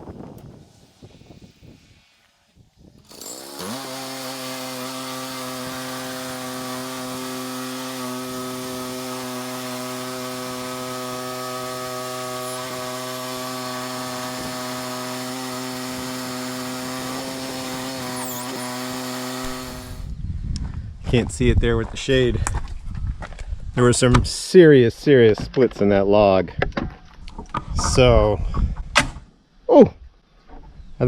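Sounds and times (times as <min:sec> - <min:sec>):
sawmill engine revving: 0:03.0 - 0:20.1.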